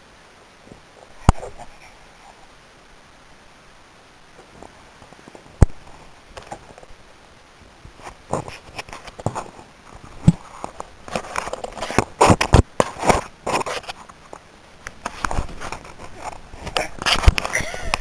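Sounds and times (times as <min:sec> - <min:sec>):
knocks and rubbing on microphone: 0:00.6 - 0:01.9, 0:07.8 - 0:18.0.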